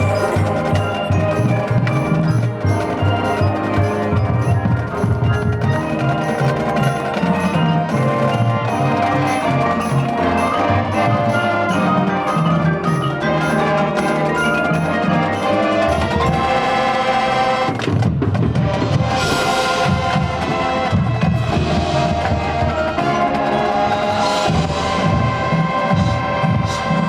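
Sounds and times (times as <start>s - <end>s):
wind instrument chords: 0.0s - 17.8s
marching drums: 0.0s - 27.0s.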